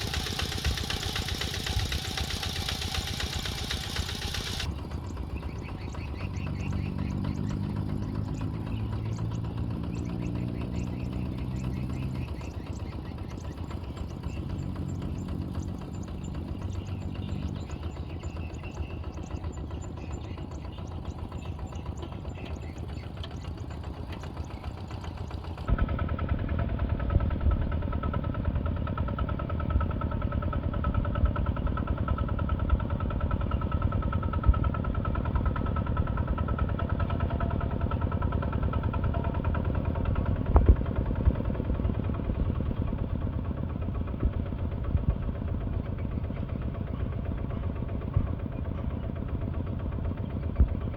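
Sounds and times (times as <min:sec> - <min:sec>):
steady whine: 0:00.0 - 0:05.7
heavy machine engine running: 0:00.0 - 0:50.9.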